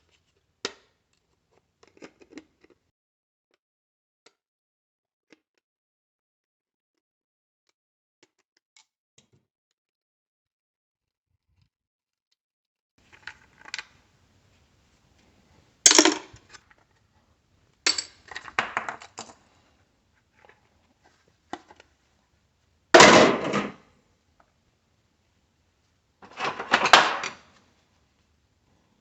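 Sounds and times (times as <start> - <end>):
small parts clattering on work surface: 13.1 - 14.0, 15.9 - 16.6, 17.8 - 19.7, 23.0 - 23.8, 26.2 - 27.6.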